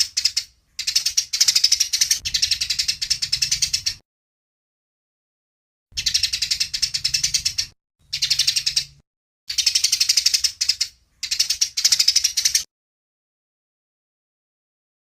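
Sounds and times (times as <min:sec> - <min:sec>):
songbird trilling: 0:00.0 - 0:04.0, 0:06.0 - 0:12.7.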